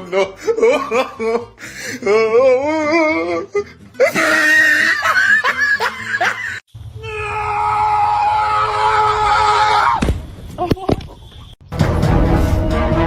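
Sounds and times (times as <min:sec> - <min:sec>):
person laughing excitedly: 0:00.0 - 0:06.6.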